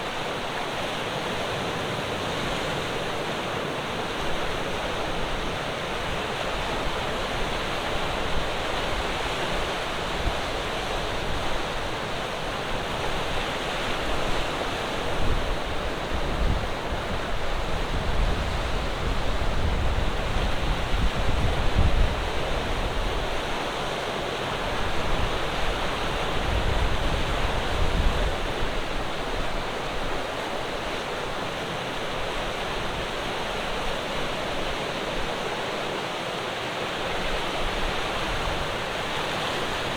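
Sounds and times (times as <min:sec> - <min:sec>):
wind on microphone: 0:15.2 - 0:23.4.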